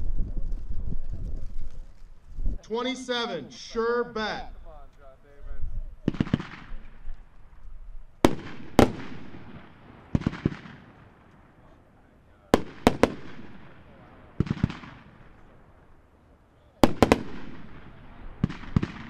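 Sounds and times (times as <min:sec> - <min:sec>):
fireworks bangs: 0:06.0 - 0:16.0, 0:16.8 - 0:19.0.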